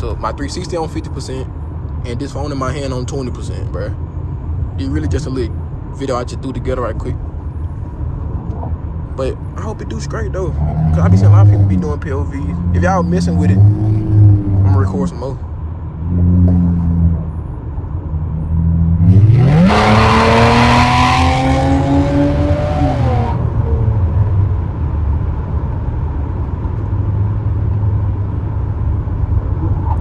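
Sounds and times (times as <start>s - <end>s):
car engine revving: 7.9s - 24.9s.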